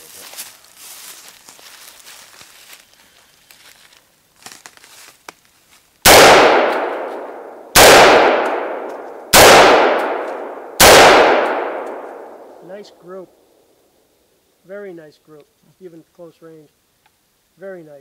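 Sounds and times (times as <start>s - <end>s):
rifle shots echoing: 6.0s - 12.7s.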